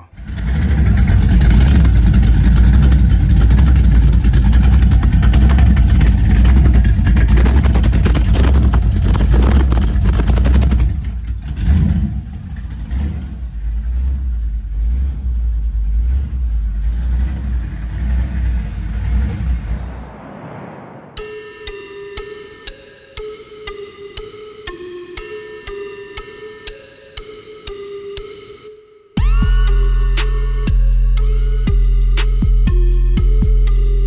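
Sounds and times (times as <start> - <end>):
engine revving and idling: 0.0 - 20.2.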